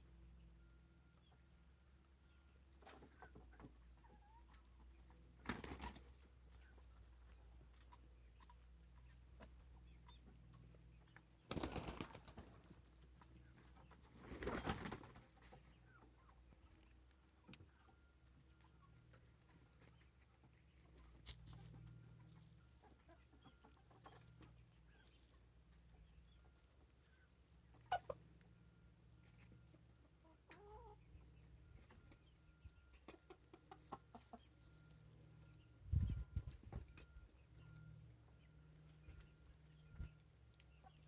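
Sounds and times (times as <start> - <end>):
faint soft bird calls: 30.5 - 41.0.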